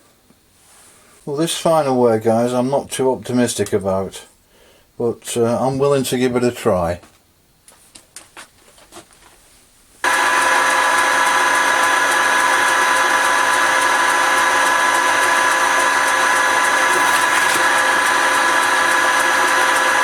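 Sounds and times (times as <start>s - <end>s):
wood-turning lathe whining: 10.0s - 20.0s.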